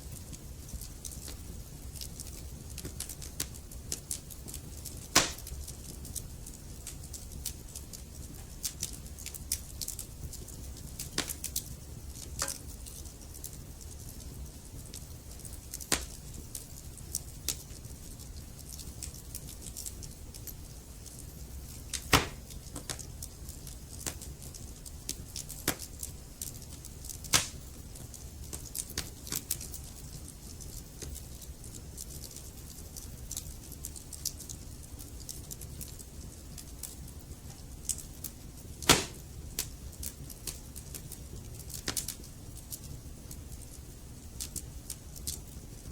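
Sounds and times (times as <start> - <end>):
burning logs popping and snapping: 0.0 - 45.9.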